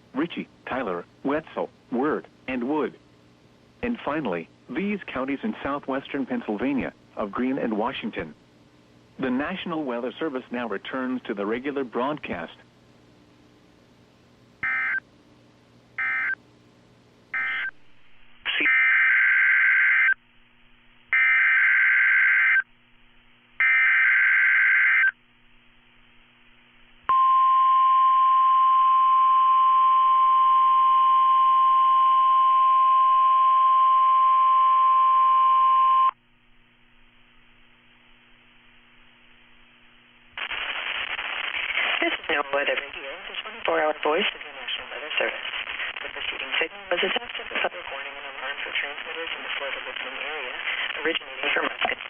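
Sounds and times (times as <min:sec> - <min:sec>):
steady warning alarm tone: 0:14.6 - 0:15.0, 0:16.0 - 0:16.4.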